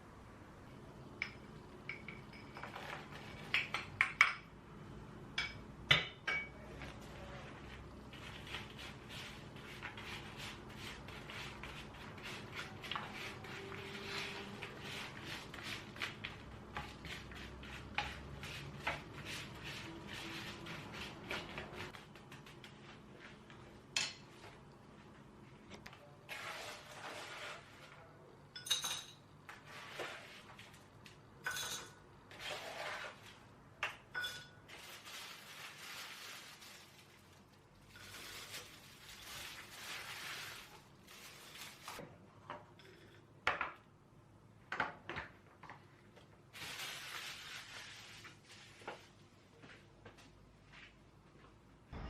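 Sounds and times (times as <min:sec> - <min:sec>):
dishes and utensils clinking: 0:01.2 - 0:04.5, 0:28.5 - 0:29.3, 0:31.4 - 0:32.0, 0:34.1 - 0:34.7.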